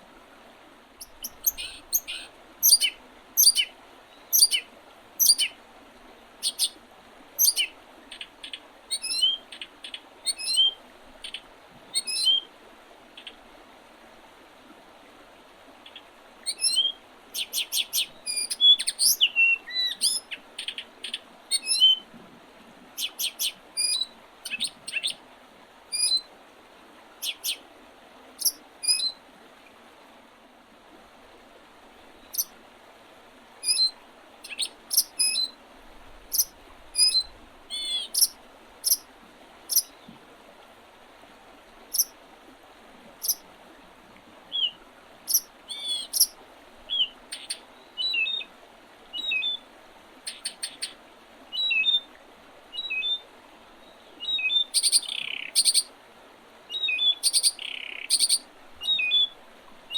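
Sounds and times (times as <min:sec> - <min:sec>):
faint steady hiss: 0:00.0 - 0:59.9
songbirds chirping: 0:01.0 - 0:05.6, 0:06.4 - 0:06.8, 0:07.4 - 0:12.5, 0:27.2 - 0:27.6, 0:33.6 - 0:35.6, 0:36.3 - 0:39.0, 0:56.7 - 0:59.4.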